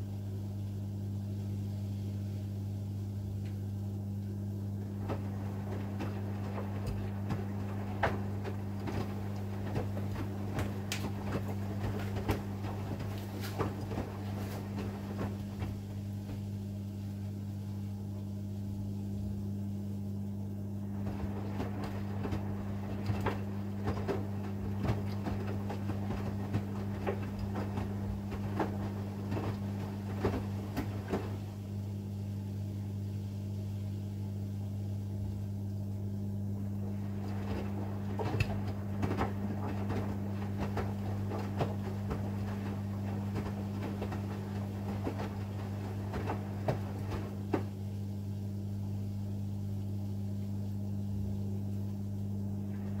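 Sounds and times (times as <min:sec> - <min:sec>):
low machine hum: 0:00.0 - 0:53.0
washing machine drum tumbling: 0:02.4 - 0:53.0
laundry swishing and knocking: 0:03.6 - 0:17.2, 0:20.7 - 0:32.5, 0:36.3 - 0:48.7.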